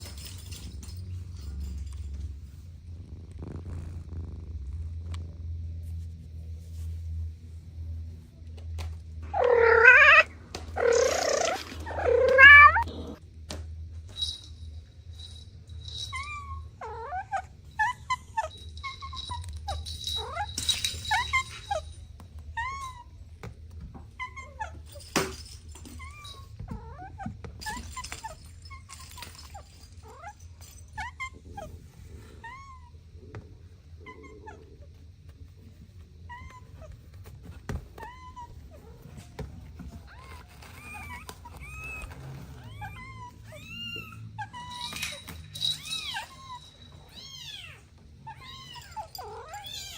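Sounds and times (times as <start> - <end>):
cats meowing: 9.2 - 13.2, 34.0 - 35.0, 37.8 - 49.9.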